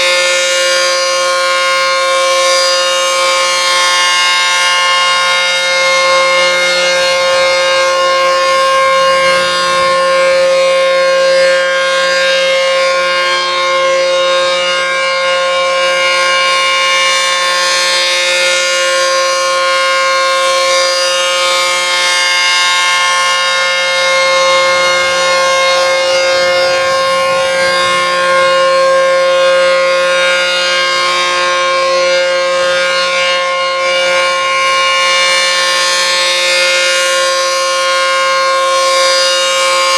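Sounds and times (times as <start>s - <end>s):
rotating warning siren: 0.0s - 39.9s.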